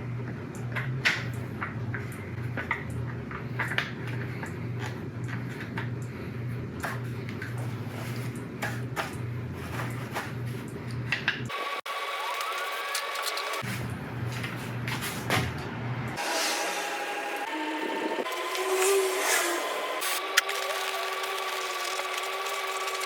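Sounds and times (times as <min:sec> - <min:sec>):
low pulsing hum: 0:00.0 - 0:11.5.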